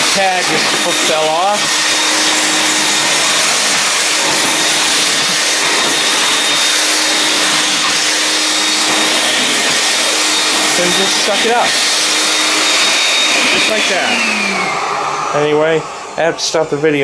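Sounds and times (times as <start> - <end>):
vacuum cleaner motor running: 0.0 - 17.0.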